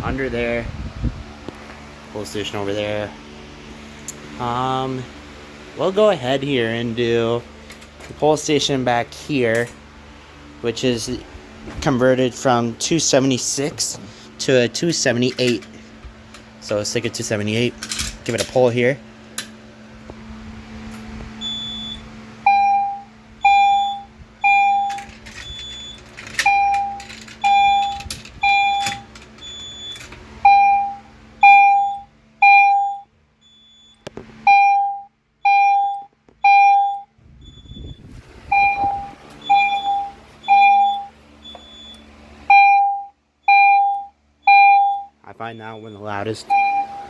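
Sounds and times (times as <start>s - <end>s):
fire alarm beeps: 21.4s - 47.0s
higher-pitched alarm tone: 21.4s - 47.0s.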